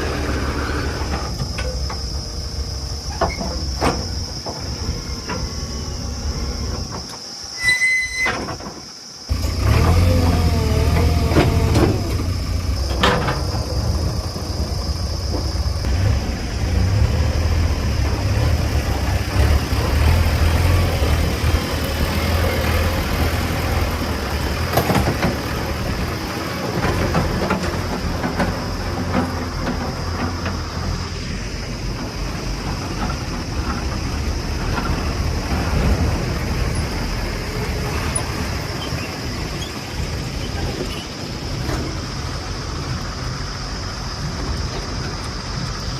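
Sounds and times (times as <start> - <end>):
diesel engine under load: 0.0 - 45.9
high metallic squeals: 7.5 - 8.6.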